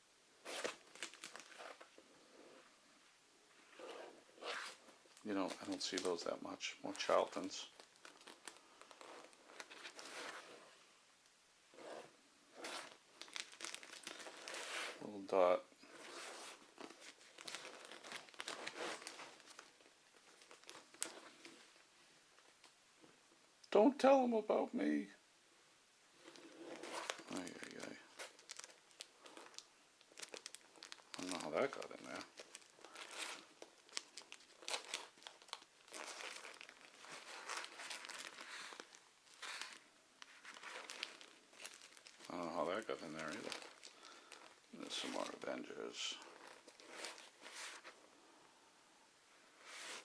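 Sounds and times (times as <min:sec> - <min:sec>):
paper crinkling and rustling: 0:00.4 - 0:02.0, 0:03.7 - 0:10.6, 0:12.6 - 0:21.7, 0:26.2 - 0:48.0.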